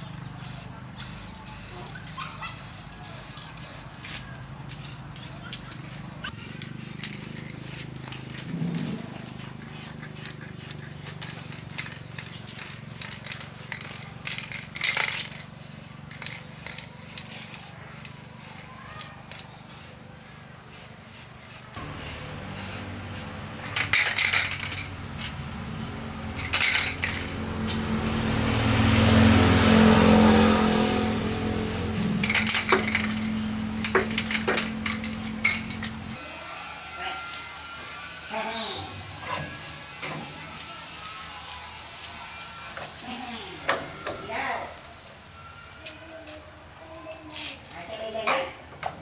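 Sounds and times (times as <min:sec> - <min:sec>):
spray paint hissing bursts: 0:00.0 - 0:04.1, 0:06.2 - 0:36.2.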